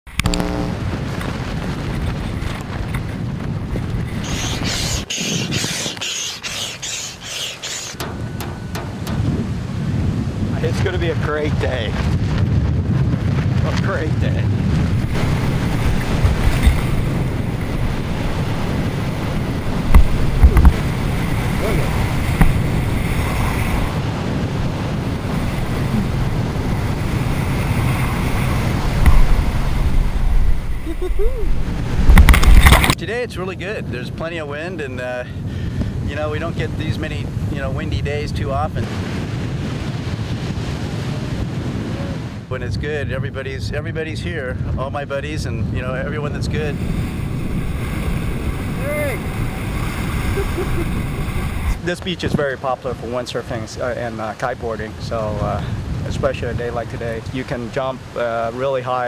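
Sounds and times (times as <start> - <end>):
gusty wind buffeting microphone: 0.1 - 59.0
short hissing bursts: 4.2 - 8.0.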